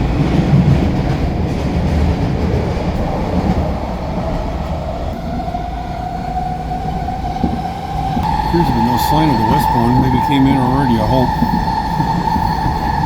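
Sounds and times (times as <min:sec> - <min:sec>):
train rumbling on track: 0:00.0 - 0:13.0
steady whine rising in pitch: 0:05.1 - 0:13.0.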